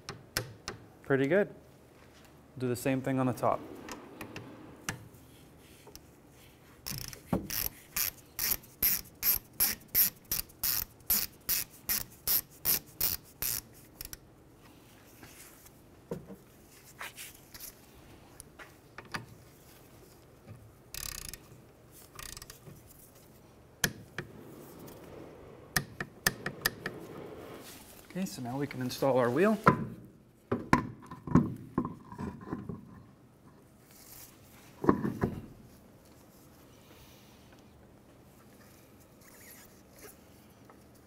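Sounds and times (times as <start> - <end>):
ratchet wrench clicking: 6.9 - 14.2, 20.9 - 21.4, 22.2 - 22.6.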